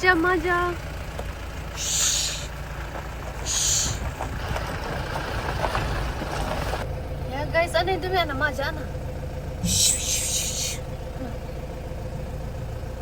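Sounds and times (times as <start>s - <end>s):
heavy engine rumbling: 0.0s - 13.0s
air releasing hisses: 1.8s - 2.5s, 3.5s - 4.0s, 9.6s - 10.8s.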